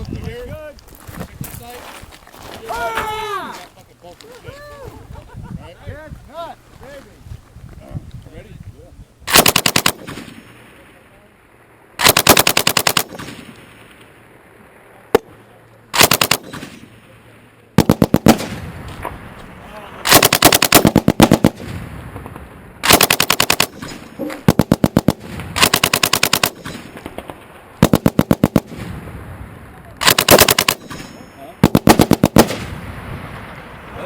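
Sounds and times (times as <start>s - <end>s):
machine gun firing bursts: 9.3s - 10.4s, 12.0s - 13.4s, 16.0s - 16.8s, 17.8s - 18.6s, 20.1s - 21.6s, 22.8s - 27.2s, 27.8s - 28.8s, 30.0s - 32.7s
single gunshot: 9.3s - 10.6s, 12.0s - 13.8s, 16.0s - 17.0s, 17.8s - 19.1s, 22.8s - 29.0s, 30.0s - 32.9s.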